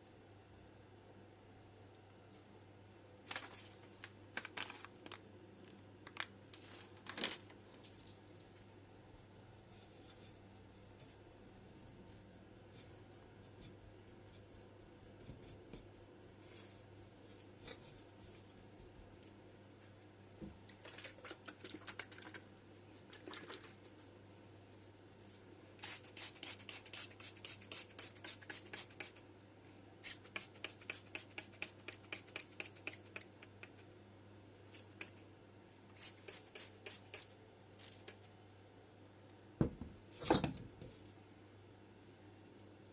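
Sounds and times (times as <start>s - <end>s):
rustling of handled material: 3.2s - 5.2s, 6.5s - 20.4s, 23.9s - 25.8s.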